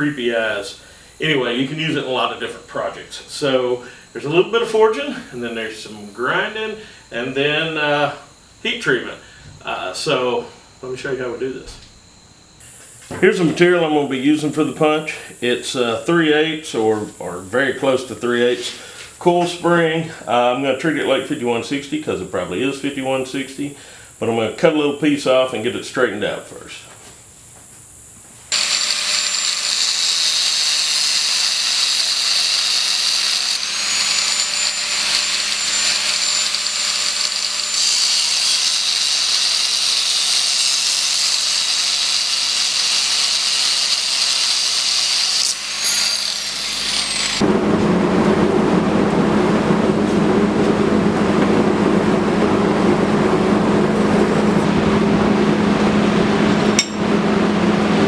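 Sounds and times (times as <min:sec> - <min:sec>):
power tool cutting steel whine: 0:00.0 - 0:18.8, 0:28.5 - 0:47.7, 0:56.7 - 0:57.3
deep mechanical hum: 0:00.0 - 0:30.2, 0:45.6 - 0:58.0.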